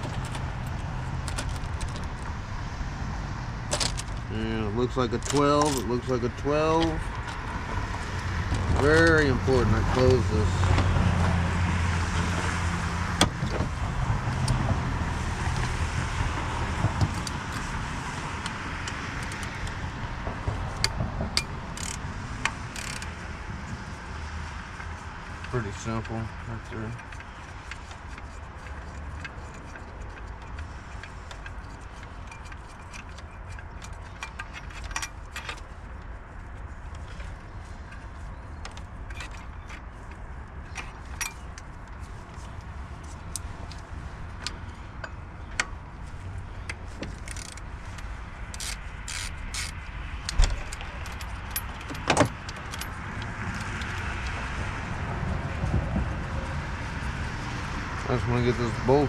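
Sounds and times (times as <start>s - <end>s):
metal tools clinking on engine parts: 3.7s - 10.7s, 24.7s - 35.8s, 37.0s - 45.7s, 46.5s - 54.4s.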